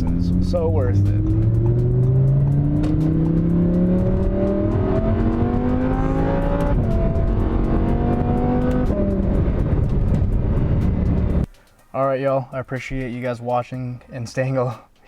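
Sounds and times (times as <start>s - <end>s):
car engine accelerating: 0.0s - 11.5s.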